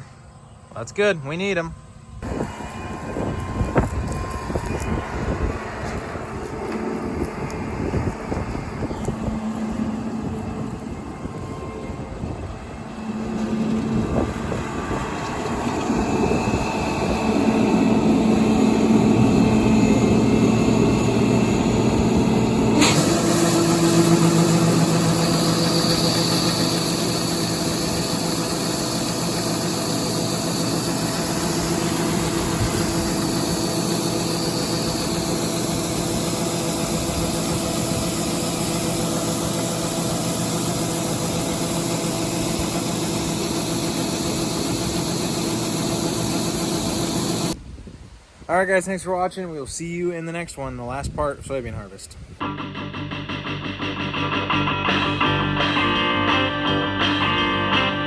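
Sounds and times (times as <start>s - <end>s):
diesel farm machinery engine: 2.2s - 47.6s.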